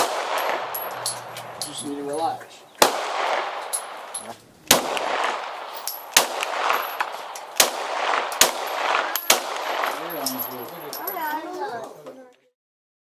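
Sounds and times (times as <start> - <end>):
pistol shots with echo: 0.0 - 1.9, 2.8 - 11.0.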